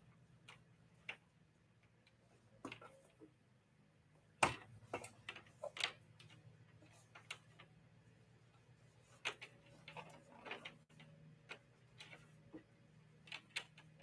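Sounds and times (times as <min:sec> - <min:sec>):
objects clicking and knocking: 0:09.0 - 0:14.0.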